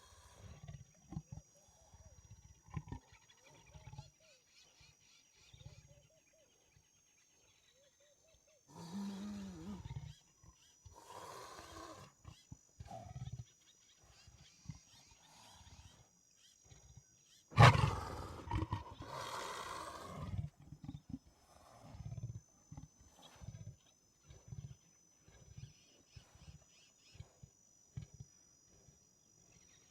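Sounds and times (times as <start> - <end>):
big cat roaring: 8.7 - 10.2, 17.5 - 24.8.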